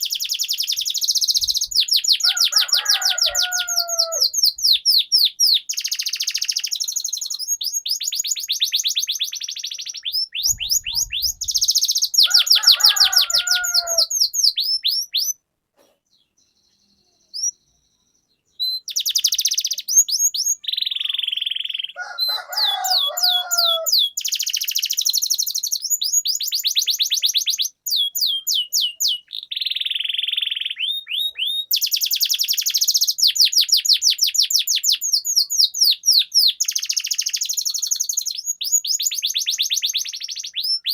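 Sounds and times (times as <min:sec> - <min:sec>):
canary singing trills: 0:00.0 - 0:15.4, 0:16.1 - 0:40.9.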